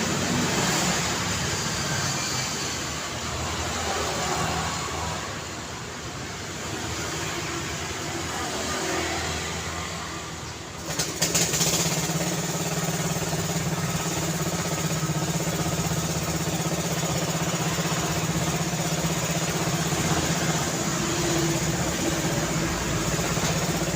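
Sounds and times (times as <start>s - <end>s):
nearby vehicle engine: 0.0s - 23.9s
road traffic: 0.0s - 23.9s.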